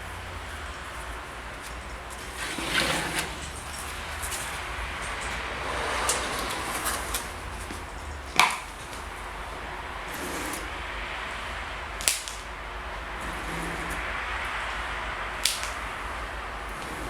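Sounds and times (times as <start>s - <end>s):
sharp snap: 12.0s - 12.5s, 15.4s - 16.0s.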